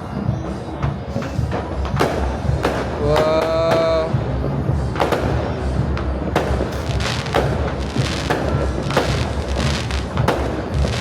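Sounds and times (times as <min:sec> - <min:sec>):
fireworks bursting with sharp bangs: 0:00.0 - 0:11.0.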